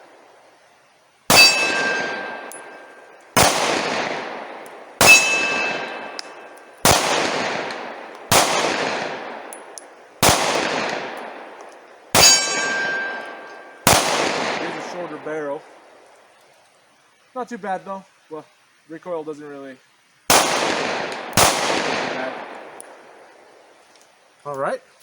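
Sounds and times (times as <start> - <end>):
pistol shots echoing: 1.3 - 15.7, 20.3 - 23.5.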